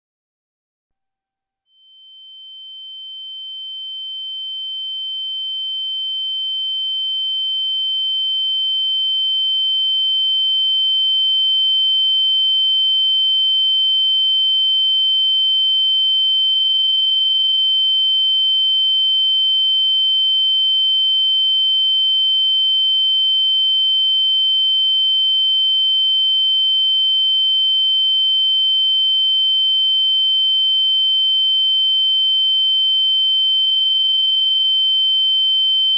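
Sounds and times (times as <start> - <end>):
high-pitched ringing tone: 1.8 - 7.6.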